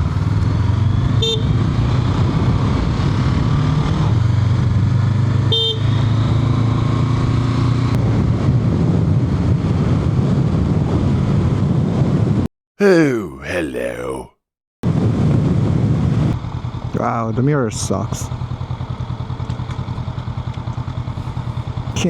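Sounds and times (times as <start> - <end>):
motorcycle engine running: 16.4 - 22.0.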